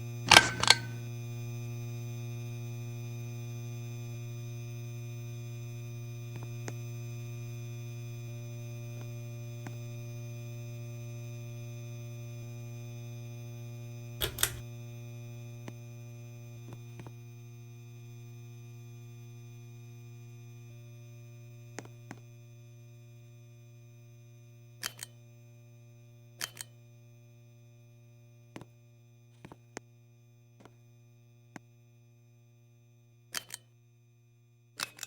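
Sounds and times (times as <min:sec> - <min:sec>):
electric fan motor humming: 0:00.0 - 0:01.5, 0:13.6 - 0:15.6
short clicks: 0:00.3 - 0:01.0, 0:14.2 - 0:14.6, 0:24.8 - 0:25.2, 0:26.4 - 0:26.8, 0:33.3 - 0:33.7, 0:34.8 - 0:35.0.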